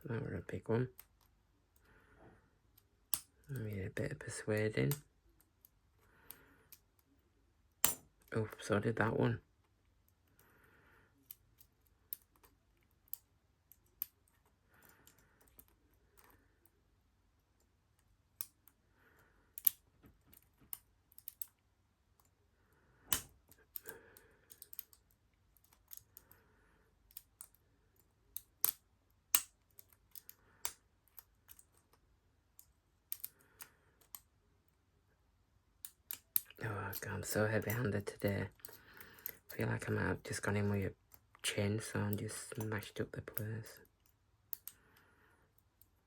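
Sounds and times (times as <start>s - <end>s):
metallic lock pick clicks: 7.8s - 8.3s, 19.6s - 21.6s, 23.1s - 26.4s, 27.0s - 32.0s, 32.6s - 34.3s, 35.8s - 37.0s, 42.5s - 44.8s.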